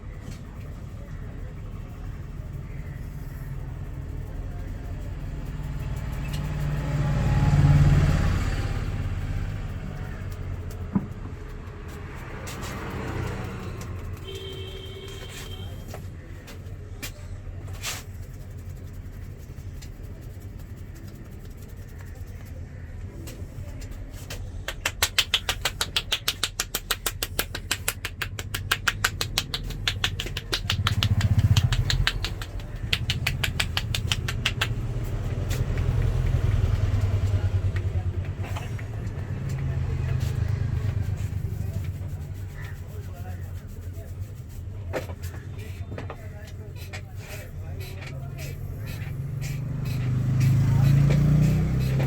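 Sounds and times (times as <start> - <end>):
street traffic noise: 0.0 - 52.0
vehicle rumbling past: 0.1 - 14.6, 28.0 - 43.5, 46.3 - 52.0
hands slapping head in massage: 24.2 - 37.9.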